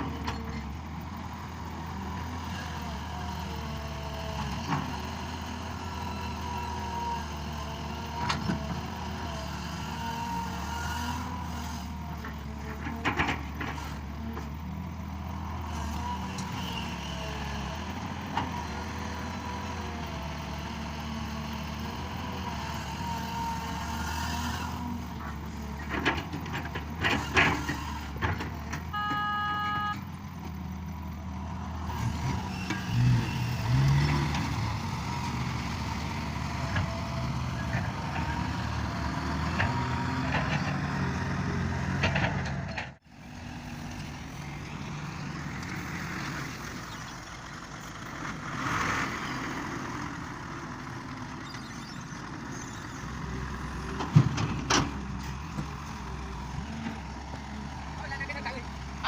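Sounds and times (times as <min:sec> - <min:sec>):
excavator diesel engine running: 0:00.0 - 0:59.0
short electronic beep: 0:28.9 - 0:30.0.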